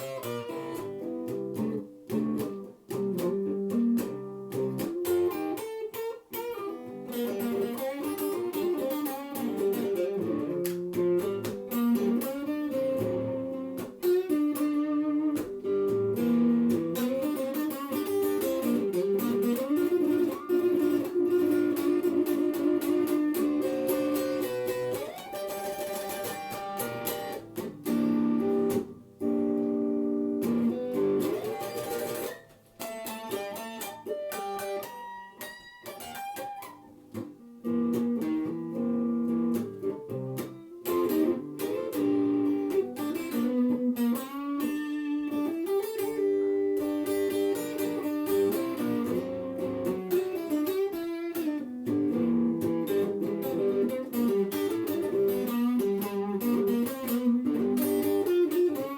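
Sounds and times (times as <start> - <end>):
blues guitar solo: 0.0 - 58.9.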